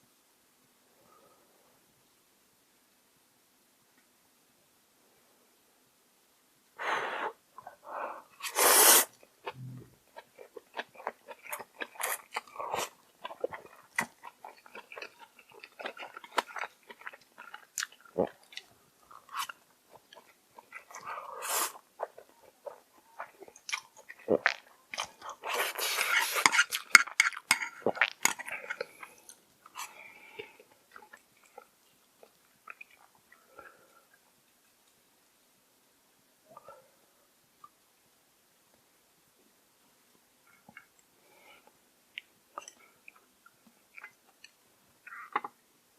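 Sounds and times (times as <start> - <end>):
wet chewing clicks and smacks: 9.4 - 12.6, 13.2 - 21.1.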